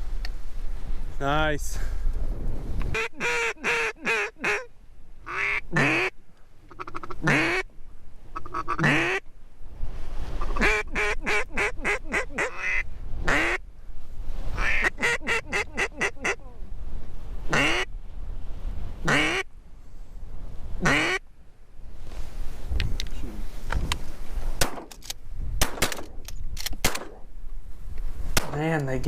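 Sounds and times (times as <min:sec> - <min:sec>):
duck call quacking: 0:03.0 - 0:04.7, 0:05.3 - 0:06.1, 0:06.7 - 0:07.6, 0:08.4 - 0:09.2, 0:10.4 - 0:13.6, 0:14.6 - 0:16.5, 0:17.5 - 0:17.9, 0:19.1 - 0:19.5, 0:20.8 - 0:21.2.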